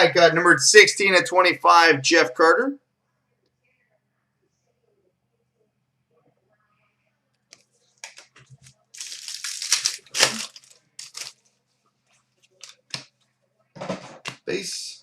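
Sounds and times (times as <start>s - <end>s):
card pack wrapper crinkling: 8.0s - 11.4s
wrapper ripping: 8.0s - 11.4s.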